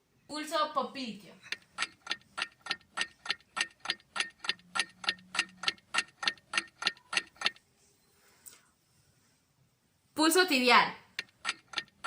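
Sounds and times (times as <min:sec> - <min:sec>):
clock ticking: 0:01.4 - 0:07.6, 0:11.1 - 0:12.0.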